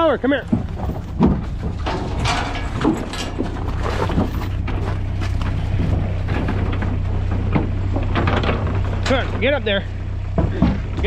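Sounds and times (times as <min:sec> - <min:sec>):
cattle bumping inside trailer: 0:00.0 - 0:11.0
low engine hum: 0:00.0 - 0:11.0.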